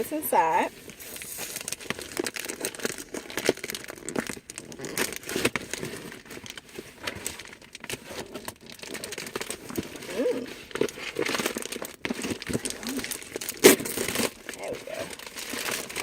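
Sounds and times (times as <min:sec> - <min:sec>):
packaging crinkling: 0:00.7 - 0:16.0
packaging tearing: 0:00.8 - 0:16.0.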